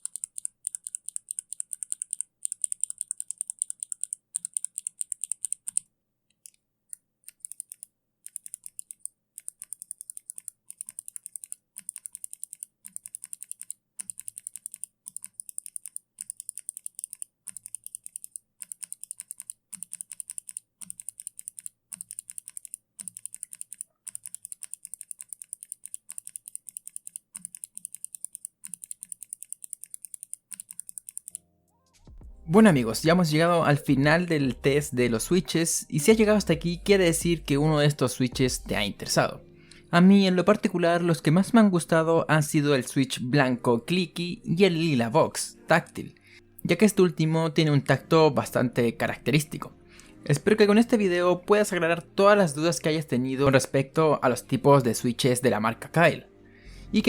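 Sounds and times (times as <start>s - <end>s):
fast typing on mechanical keyboard: 0.0s - 5.8s, 7.3s - 31.4s.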